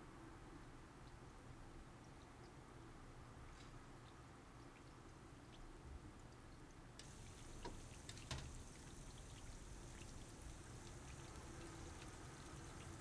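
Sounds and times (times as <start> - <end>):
oil crackles and pops: 7.0 - 13.0.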